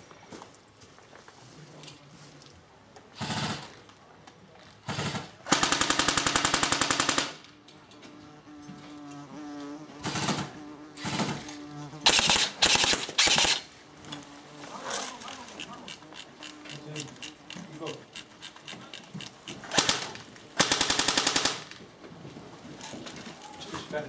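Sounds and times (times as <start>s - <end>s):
airsoft rifle firing bursts: 3.2s - 3.7s, 4.8s - 7.4s, 10.0s - 11.4s, 12.0s - 13.7s, 19.5s - 21.8s.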